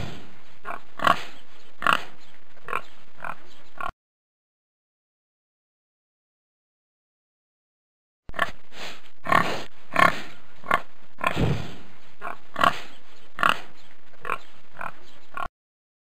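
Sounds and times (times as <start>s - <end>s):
pig grunting: 0.0s - 3.9s, 9.2s - 15.5s.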